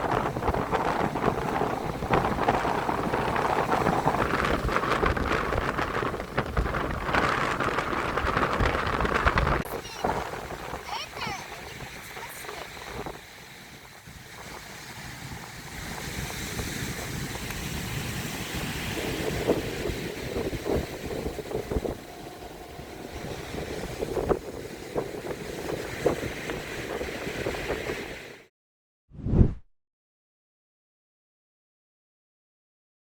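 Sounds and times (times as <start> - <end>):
wind buffeting microphone: 0.0 - 28.4
surf breaking on shore: 0.0 - 28.5.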